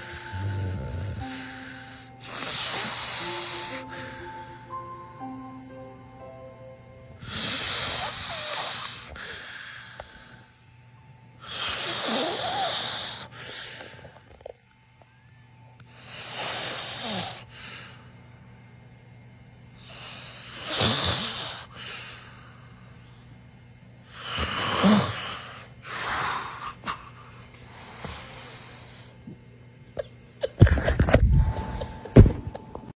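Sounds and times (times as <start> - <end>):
person snoring: 0.0 - 4.7, 7.2 - 10.5, 11.4 - 14.1, 15.9 - 18.0, 19.8 - 22.3, 24.1 - 29.2.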